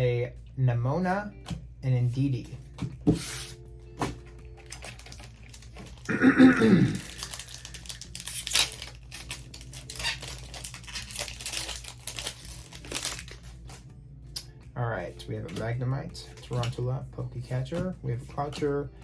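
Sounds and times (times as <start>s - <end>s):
cards rustling: 2.1s - 6.1s, 6.9s - 13.9s, 15.5s - 16.8s
foil pack crinkling and tearing: 4.1s - 13.8s.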